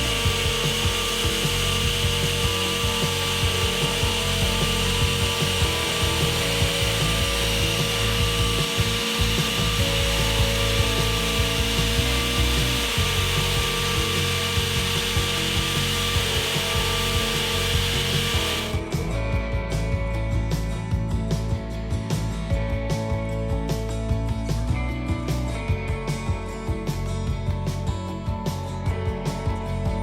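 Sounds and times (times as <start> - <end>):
flooring tool hissing: 0.0 - 19.0
background music: 0.0 - 30.0.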